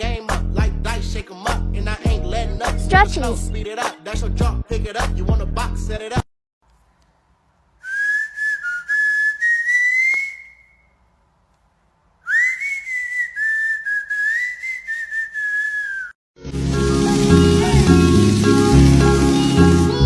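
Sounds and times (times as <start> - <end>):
faint click: 6.6 - 7.2
high wavering whistle: 7.8 - 11.0, 12.3 - 16.2.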